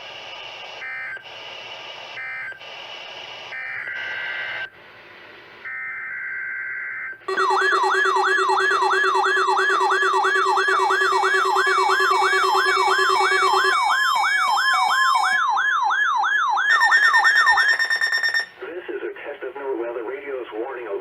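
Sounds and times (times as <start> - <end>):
falling sweep alert siren: 6.7 - 18.6
steady higher alarm tone: 7.3 - 18.6
steady low alarm tone: 7.3 - 18.6.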